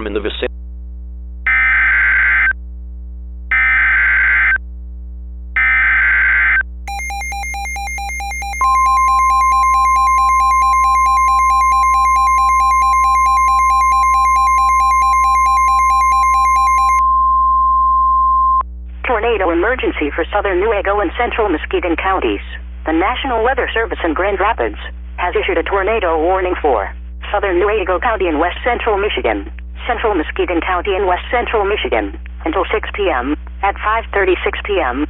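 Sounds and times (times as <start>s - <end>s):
buzzy warbling electronic alarm: 5.6s - 17.0s
loud steady alarm tone: 6.9s - 17.0s
warbling digital data tones: 6.9s - 17.0s.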